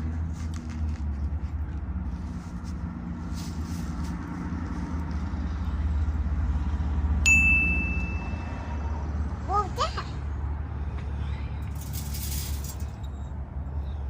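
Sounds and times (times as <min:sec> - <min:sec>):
vehicle engine rumbling past: 0:00.0 - 0:14.0
high bell-like ding: 0:07.3 - 0:08.8.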